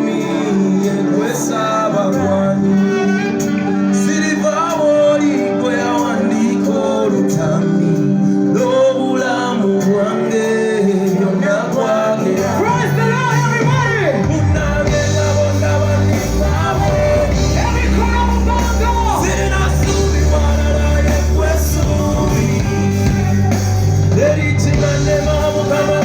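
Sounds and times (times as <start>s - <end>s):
loud music with singing: 0.0s - 26.0s.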